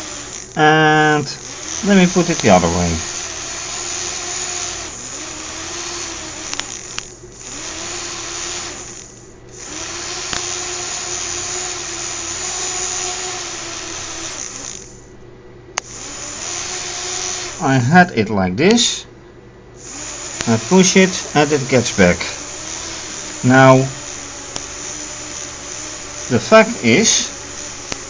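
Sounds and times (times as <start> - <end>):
small electric motors whirring: 0.0 - 15.1, 15.8 - 18.0, 19.8 - 28.0
sharp click: 6.5 - 7.1, 10.2 - 10.6.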